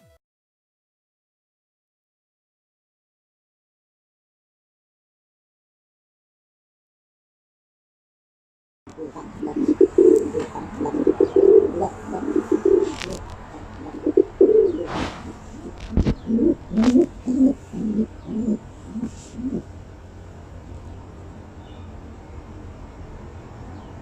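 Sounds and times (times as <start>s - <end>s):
pigeon cooing: 8.9s - 19.7s.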